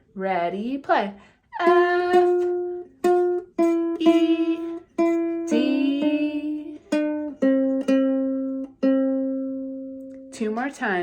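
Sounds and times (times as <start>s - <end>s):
person singing: 1.5s - 2.9s, 3.6s - 7.0s
ukulele picking notes: 1.6s - 10.6s.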